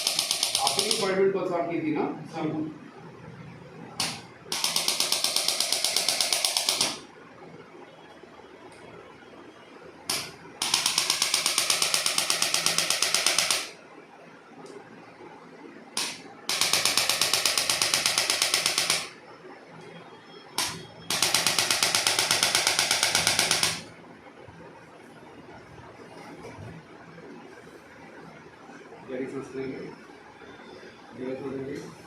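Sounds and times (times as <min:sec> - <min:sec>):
electric percussion tapping rapidly: 0:00.0 - 0:01.2.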